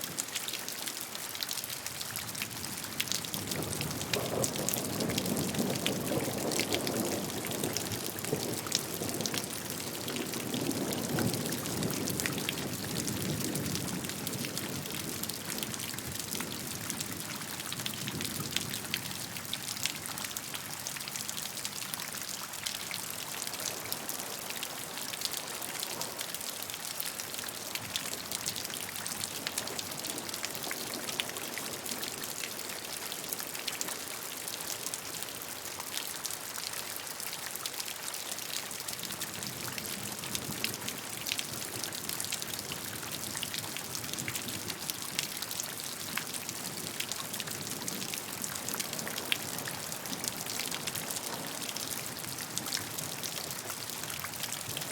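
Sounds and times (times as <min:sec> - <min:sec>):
raindrops pattering on a surface: 0:00.0 - 0:54.9.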